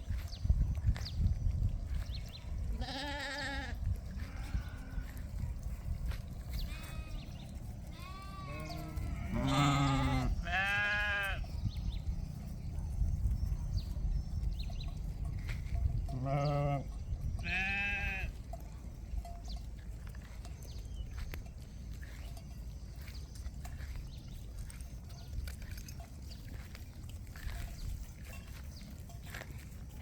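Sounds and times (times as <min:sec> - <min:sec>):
steady low rumble: 0:00.0 - 0:29.6
sheep bleating: 0:02.7 - 0:05.1, 0:07.9 - 0:11.4, 0:16.1 - 0:18.3.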